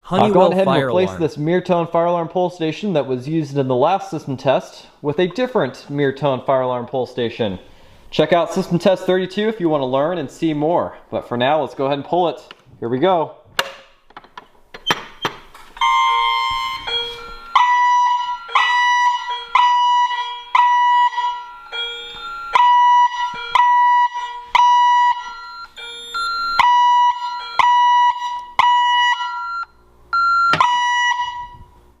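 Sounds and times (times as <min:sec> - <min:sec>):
fire alarm electronic tone: 0:15.8 - 0:31.7.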